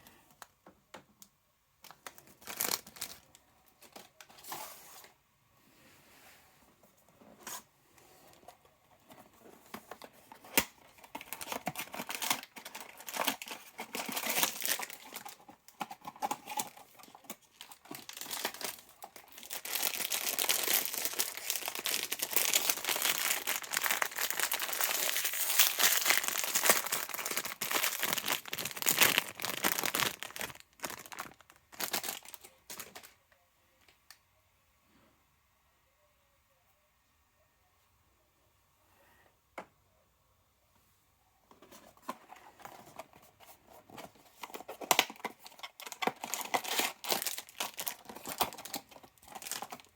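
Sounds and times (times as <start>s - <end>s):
packaging crinkling and tearing: 1.8s - 4.1s, 9.8s - 33.1s, 43.9s - 49.9s.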